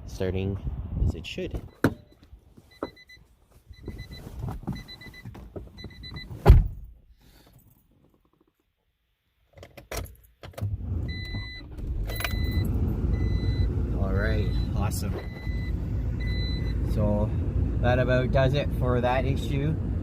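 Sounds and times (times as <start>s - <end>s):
car warning chime beeping: 1.7s - 6.3s, 11.1s - 17.0s
car door shutting: 5.9s - 6.9s
car engine starting: 10.6s - 20.0s.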